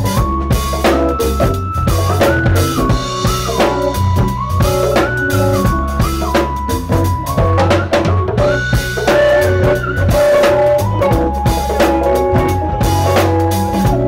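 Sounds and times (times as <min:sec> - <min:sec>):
drum kit with rimshots: 0:00.0 - 0:14.0
soul band playing: 0:00.0 - 0:14.0
strong bass line: 0:00.0 - 0:14.0.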